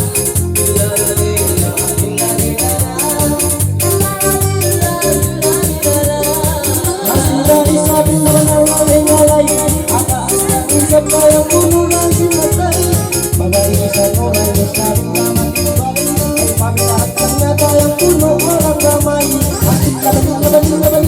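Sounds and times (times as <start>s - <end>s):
loud music with steady beat: 0.0s - 21.0s.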